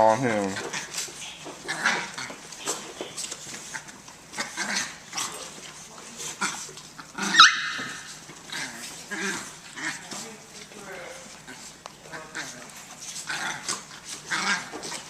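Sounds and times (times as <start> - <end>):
rough dog noises: 0.0 - 15.0
high-pitched puppy cry: 7.2 - 8.2.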